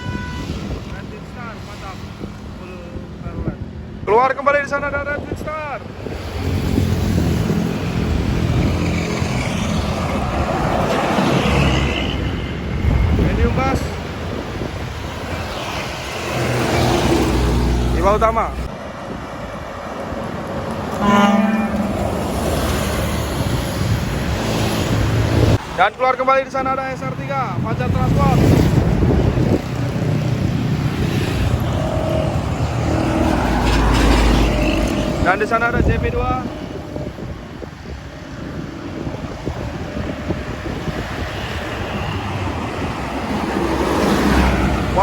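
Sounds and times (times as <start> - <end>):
bus air horn blast: 0.0 - 0.7, 20.9 - 22.8
wind on microphone: 0.0 - 1.2, 5.0 - 25.6, 27.5 - 45.0
bus engines and road noise: 0.0 - 45.0.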